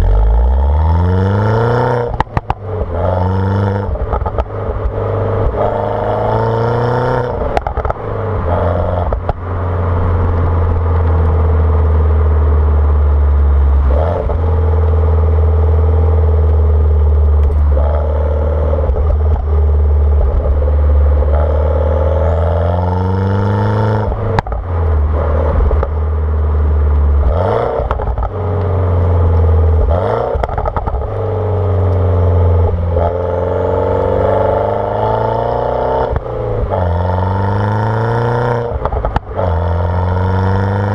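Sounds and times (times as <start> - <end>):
car engine revving: 0.0 - 40.9
exhaust pops and crackles: 1.8 - 5.8, 7.2 - 12.0, 13.0 - 22.4, 24.0 - 33.2, 38.4 - 40.9.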